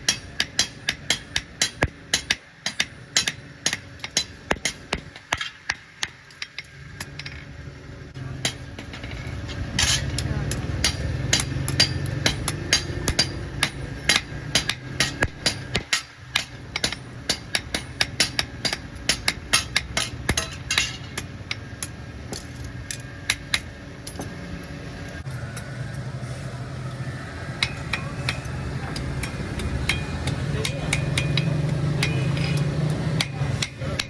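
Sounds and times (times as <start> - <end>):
hammer striking steel: 0.0 - 7.5, 8.2 - 24.3, 27.5 - 34.0.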